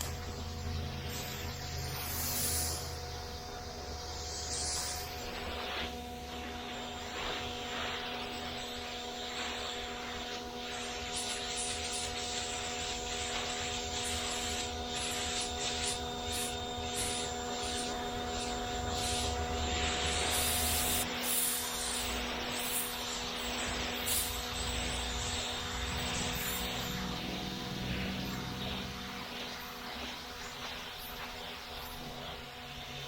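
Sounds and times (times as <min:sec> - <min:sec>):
spray hissing on concrete: 0:10.8 - 0:24.8.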